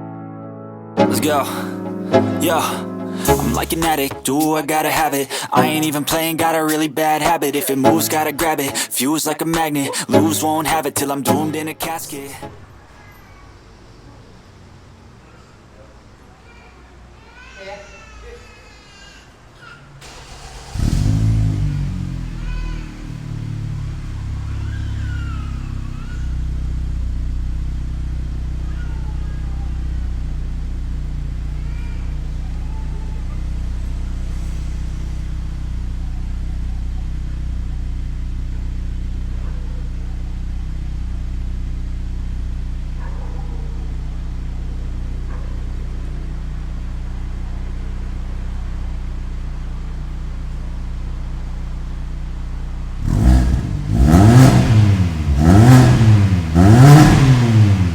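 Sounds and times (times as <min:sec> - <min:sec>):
engine revving sharply: 0:01.0 - 0:12.7, 0:20.0 - 0:26.7, 0:53.0 - 0:57.9
car engine idling: 0:01.0 - 0:13.0, 0:20.0 - 0:57.9.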